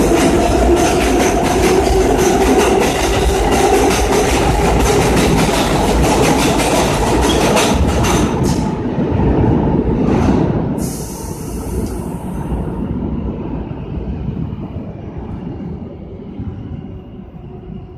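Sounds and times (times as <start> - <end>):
subway train wheels clicking: 0.0 - 17.9
train rumble: 0.0 - 17.9.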